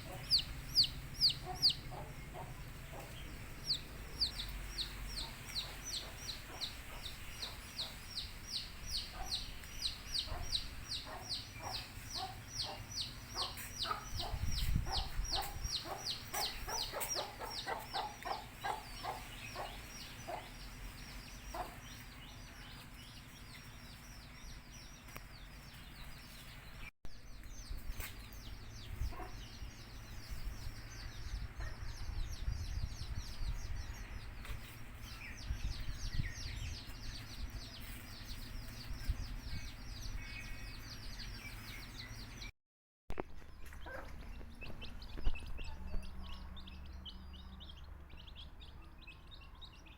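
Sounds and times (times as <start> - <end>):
hen clucking: 0.0 - 20.6
baby chicks peeping: 0.0 - 42.5, 43.6 - 49.9.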